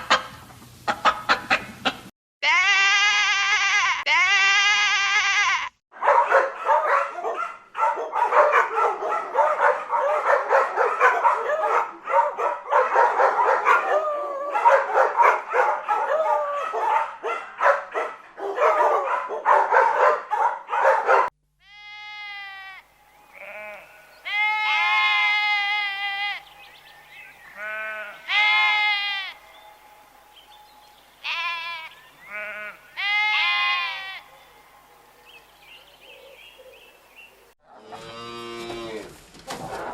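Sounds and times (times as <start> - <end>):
livestock bleating: 2.4 - 5.8, 21.6 - 26.6, 27.5 - 29.5, 31.2 - 34.3, 37.8 - 39.1.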